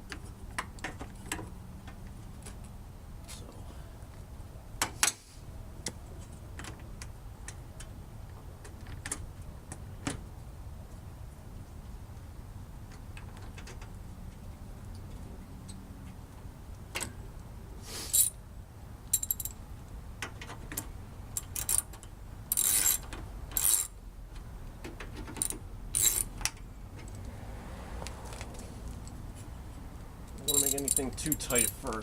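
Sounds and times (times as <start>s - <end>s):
ratchet wrench clicking: 18.1s - 18.3s, 19.1s - 19.5s, 21.4s - 24.0s, 25.4s - 26.4s, 30.4s - 31.8s.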